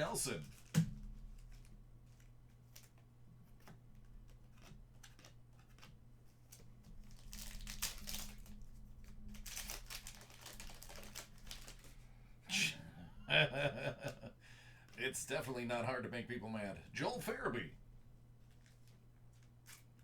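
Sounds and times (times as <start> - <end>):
low electrical hum: 0.0 - 20.0
foil wrapper crinkling: 0.4 - 12.2, 18.4 - 20.0.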